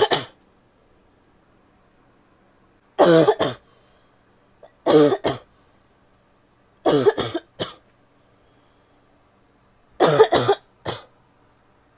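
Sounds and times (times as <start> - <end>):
woman coughing: 0.0 - 0.4, 3.0 - 3.6, 4.8 - 5.5, 6.9 - 7.8, 10.0 - 11.1.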